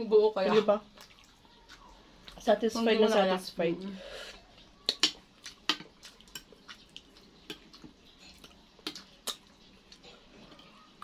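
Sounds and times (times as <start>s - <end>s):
wet mouth clicks and smacks: 4.8s - 9.5s.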